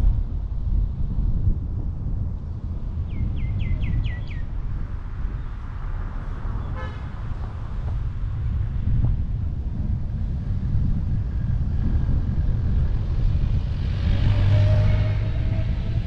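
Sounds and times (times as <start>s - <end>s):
wind and road noise: 0.0s - 16.0s
bird chirping: 3.1s - 4.4s
car horn toot: 6.8s - 7.2s.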